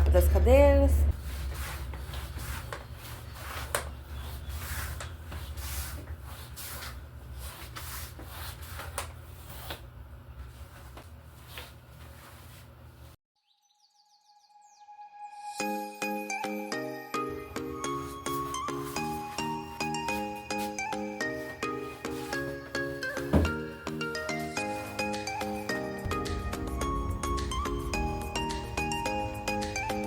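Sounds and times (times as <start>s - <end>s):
fabric rustling and rubbing: 1.1s - 13.2s, 17.9s - 26.4s
gentle music: 14.4s - 30.0s
steady low hum: 26.0s - 30.0s.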